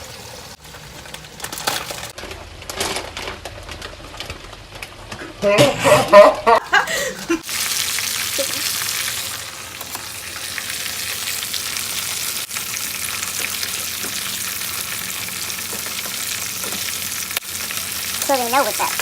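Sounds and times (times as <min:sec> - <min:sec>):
chicken frying in hot oil: 0:00.0 - 0:02.6, 0:06.6 - 0:19.0.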